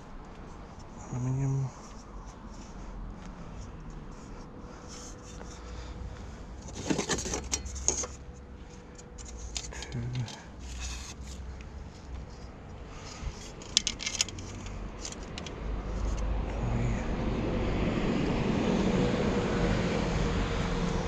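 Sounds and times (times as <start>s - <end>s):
passing vehicle road noise: 10.3s - 21.0s
aluminium pieces clinking: 13.4s - 15.6s.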